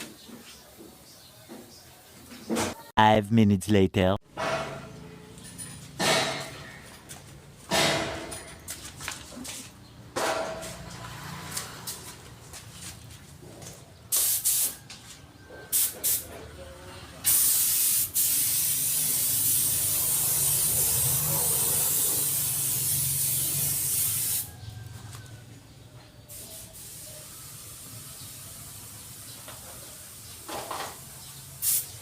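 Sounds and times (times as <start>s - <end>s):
nozzle spray hissing: 17.3s - 24.5s, 31.4s - 32.0s.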